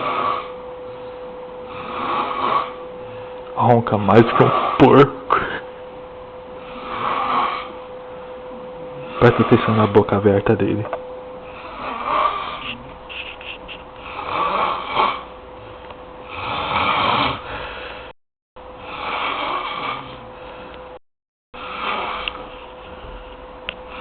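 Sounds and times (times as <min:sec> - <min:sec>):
heavy snoring: 0:00.0 - 0:00.6, 0:01.6 - 0:05.6, 0:06.6 - 0:07.8, 0:08.8 - 0:09.9, 0:11.4 - 0:13.0, 0:14.0 - 0:18.1, 0:18.8 - 0:20.8, 0:21.6 - 0:23.2.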